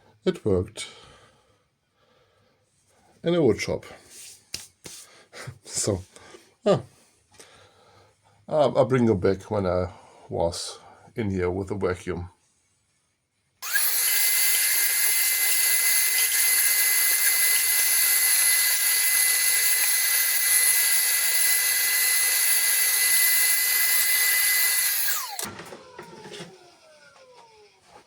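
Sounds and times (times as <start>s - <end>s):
vacuum cleaner whining: 13.6s - 28.0s.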